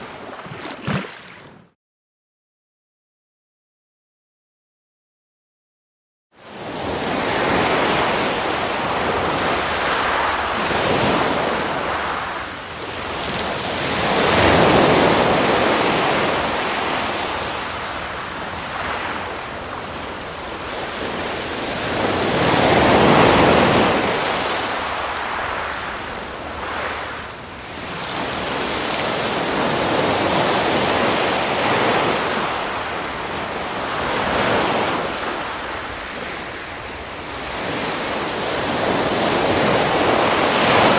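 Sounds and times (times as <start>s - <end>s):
ocean waves breaking: 0.0s - 1.7s, 6.5s - 40.9s.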